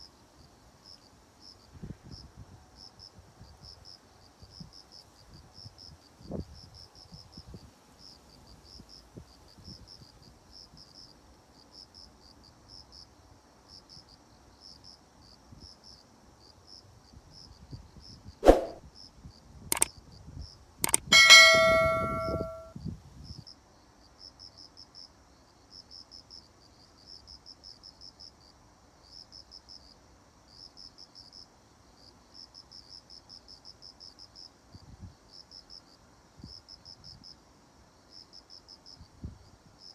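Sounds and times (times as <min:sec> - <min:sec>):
sharp clicks: 0:20.8 - 0:22.4
loud metallic clang: 0:21.1 - 0:22.7.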